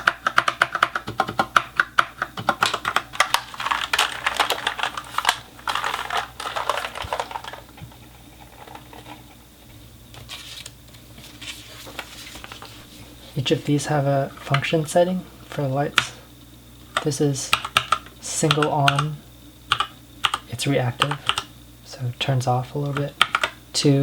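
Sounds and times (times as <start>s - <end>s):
mechanical keyboard typing: 0.0s - 7.6s, 17.0s - 19.1s, 19.7s - 20.4s, 21.0s - 21.5s, 23.0s - 23.6s.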